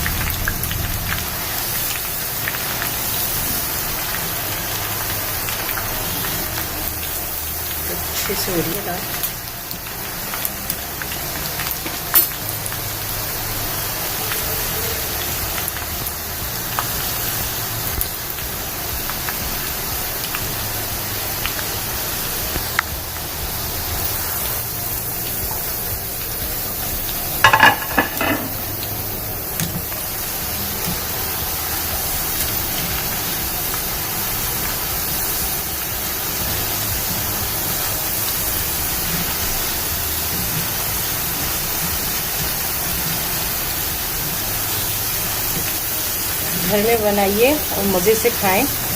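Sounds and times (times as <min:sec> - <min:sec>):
lentils deep-frying in oil: 0:00.0 - 0:48.9.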